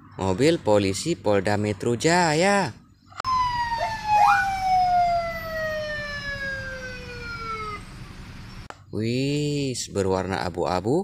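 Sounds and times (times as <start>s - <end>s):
toy siren wail: 3.2s - 8.0s
short rising chirps: 3.7s - 4.8s.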